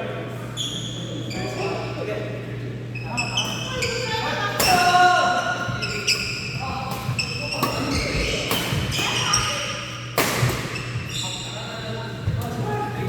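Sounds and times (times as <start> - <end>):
shoes squeaking on court floor: 0.6 - 1.9, 2.9 - 13.0
rackets hitting shuttlecock: 10.1 - 11.0.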